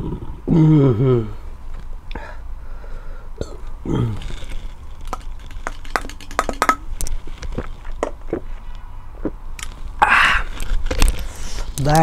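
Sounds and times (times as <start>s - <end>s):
utensils clinking against dish: 5.9s - 6.8s.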